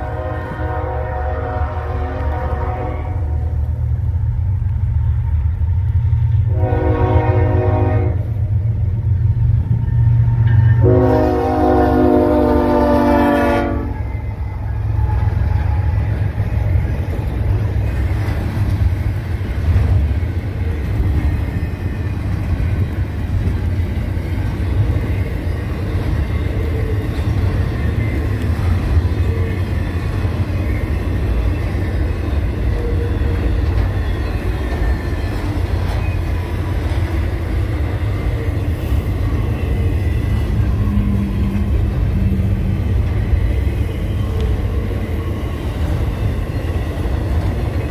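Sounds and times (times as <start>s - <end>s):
locomotive horn blast: 0.0s - 3.6s, 6.5s - 8.4s, 10.8s - 14.2s
freight train rumbling past: 0.0s - 47.9s.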